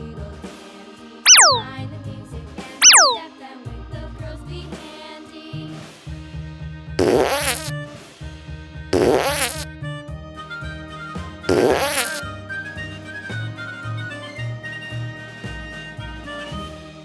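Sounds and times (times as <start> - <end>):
bouncy children's music: 1.3 - 1.7, 2.8 - 3.3, 7.0 - 7.7, 9.0 - 9.6, 11.5 - 12.2
wobbling fart-like blasts: 7.0 - 7.7, 9.0 - 9.6, 11.5 - 12.2.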